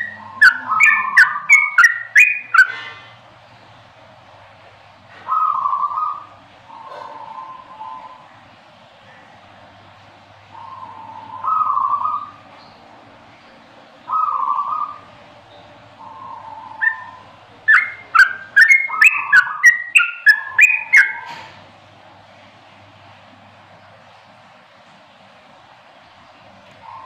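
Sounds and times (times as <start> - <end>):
bulbul singing: 0.0 - 2.8, 10.5 - 12.9, 14.1 - 21.5.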